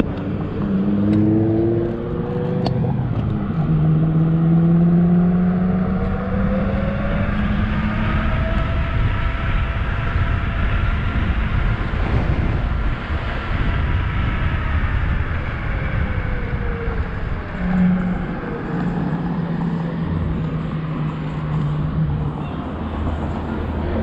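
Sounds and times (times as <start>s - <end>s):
wind rushing over microphone: 0.0s - 24.0s
faint whine sliding down: 10.8s - 22.3s.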